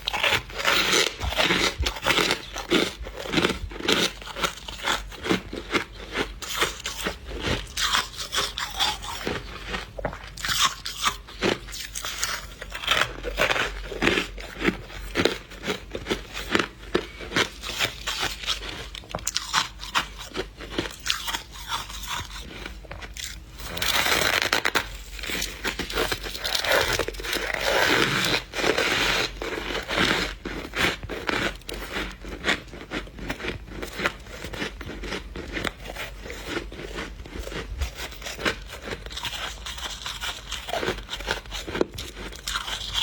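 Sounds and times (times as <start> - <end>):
frost being scraped: 0.0 - 5.0
crisp crunching and chewing of frost: 0.0 - 43.0.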